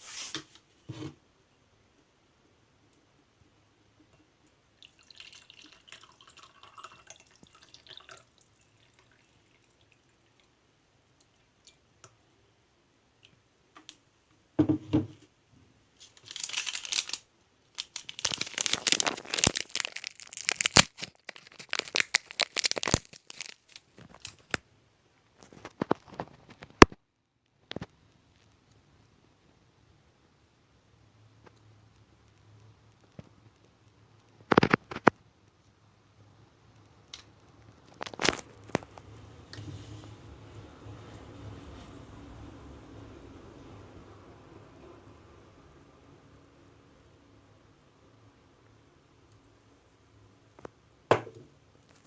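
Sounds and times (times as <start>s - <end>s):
rustling and crinkling: 0.0s - 1.2s, 16.0s - 24.6s, 25.2s - 26.9s, 37.4s - 42.1s, 51.8s - 52.0s
dull knock: 14.6s - 15.1s, 51.1s - 51.5s.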